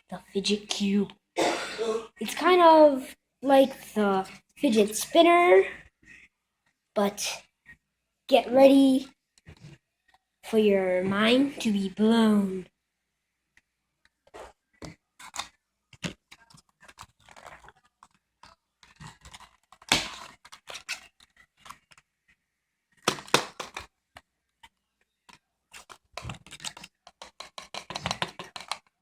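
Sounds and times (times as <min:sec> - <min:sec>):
packaging clicks and rustles: 0:14.1 - 0:22.2, 0:22.9 - 0:29.0.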